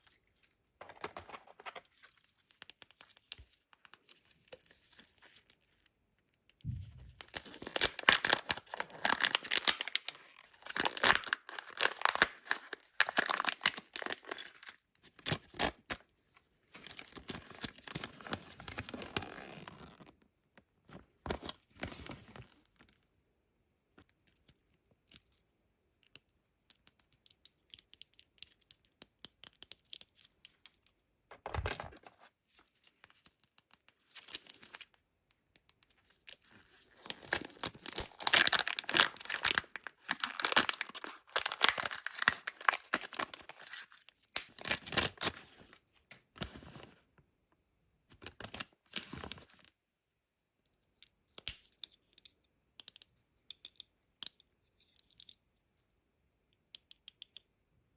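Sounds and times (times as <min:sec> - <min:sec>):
foil wrapper tearing and crinkling: 0:07.2 - 0:15.8, 0:37.0 - 0:45.3.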